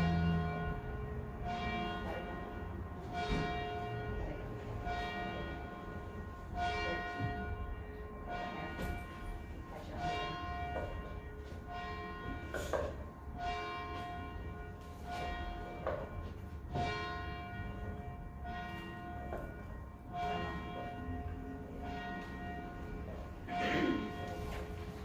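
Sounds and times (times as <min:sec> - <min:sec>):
church bells ringing: 0:00.0 - 0:25.0.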